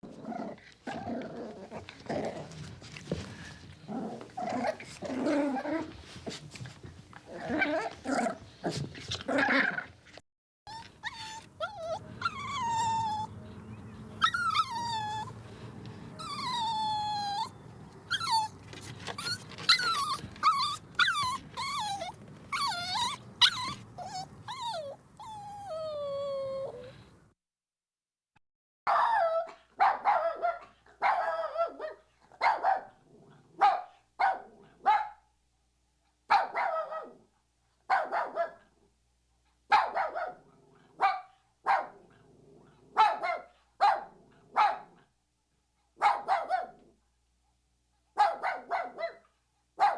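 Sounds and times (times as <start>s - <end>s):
puppy yipping and barking: 10.7s - 13.3s, 14.2s - 15.4s, 16.2s - 17.5s, 18.1s - 26.9s, 46.0s - 46.8s, 48.2s - 49.2s
puppy whining and whimpering: 10.7s - 13.4s, 14.2s - 15.4s, 16.2s - 27.1s.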